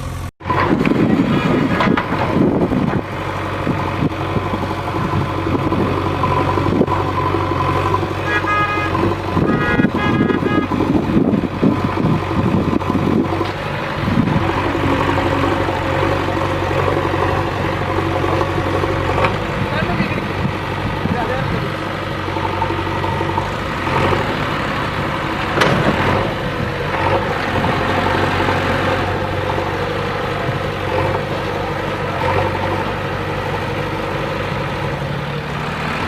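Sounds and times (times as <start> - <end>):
diesel engine running: 0.0 - 36.0
horn toots: 8.2 - 11.1.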